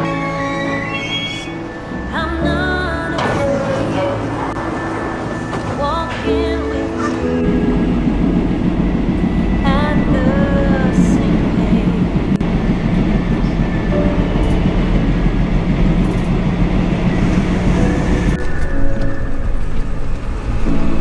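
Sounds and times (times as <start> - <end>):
high sliding tone: 0.0 - 16.0
train rumbling along track: 0.0 - 21.0.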